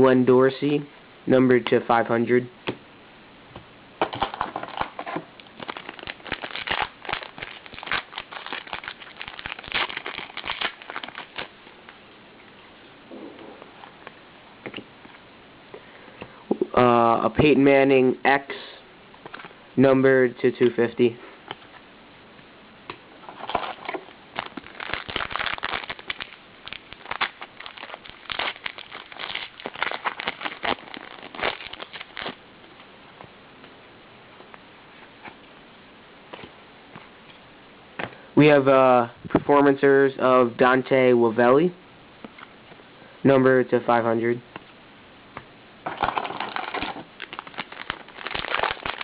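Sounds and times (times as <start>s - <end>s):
card pack wrapper crinkling: 4.1s - 11.5s, 23.2s - 32.4s, 45.8s - 49.0s.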